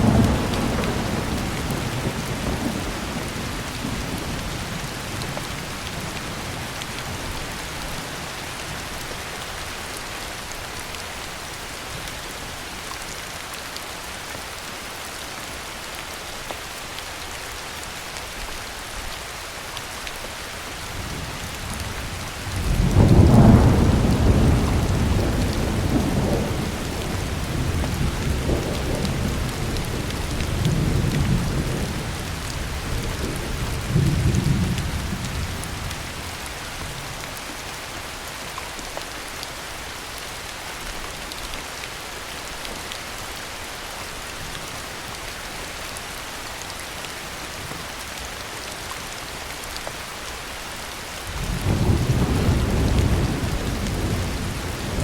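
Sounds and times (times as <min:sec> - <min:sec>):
thunder rumbling: 0:00.0 - 0:06.7, 0:21.8 - 0:36.3, 0:51.3 - 0:55.0
heavy rain: 0:00.0 - 0:55.0.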